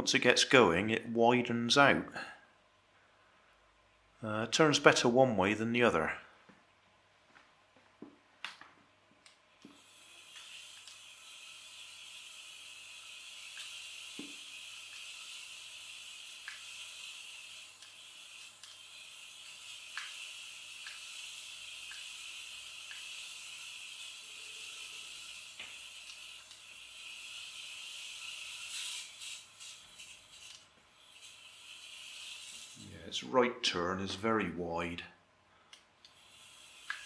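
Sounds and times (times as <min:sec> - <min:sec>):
toy car motor whirring: 0:09.6 - 0:33.2, 0:36.1 - 0:37.0.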